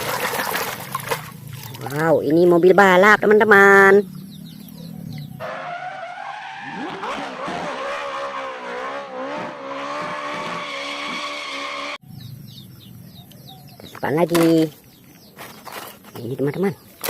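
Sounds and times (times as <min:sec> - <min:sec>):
racing car engine: 0:04.2 - 0:12.0
tyres screeching: 0:05.4 - 0:12.0.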